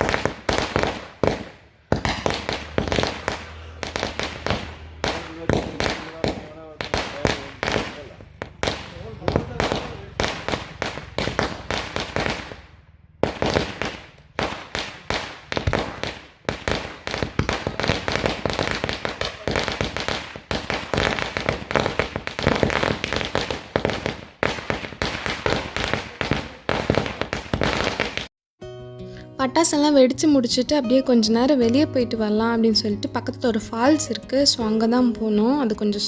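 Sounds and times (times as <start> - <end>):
firecrackers banging: 0.0 - 28.3.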